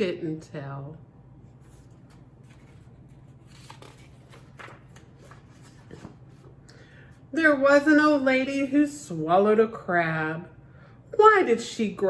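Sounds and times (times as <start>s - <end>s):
steady low hum: 0.0s - 11.2s
book page turning: 1.5s - 6.6s.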